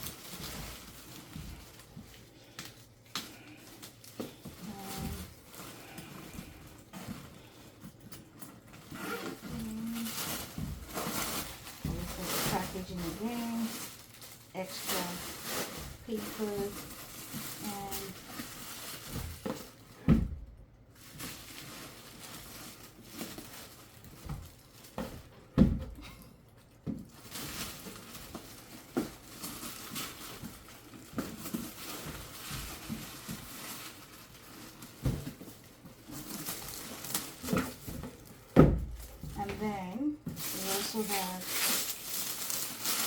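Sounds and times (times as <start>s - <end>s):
packing paper rustling: 0.0s - 43.0s.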